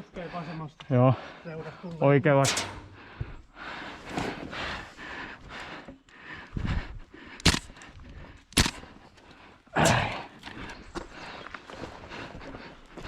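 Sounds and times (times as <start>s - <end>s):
airsoft rifle shots: 7.4s - 7.7s, 8.6s - 8.8s.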